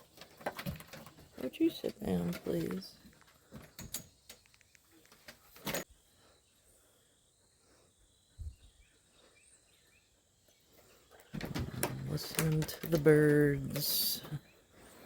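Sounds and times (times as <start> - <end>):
faint bird chirps: 2.7 - 11.6.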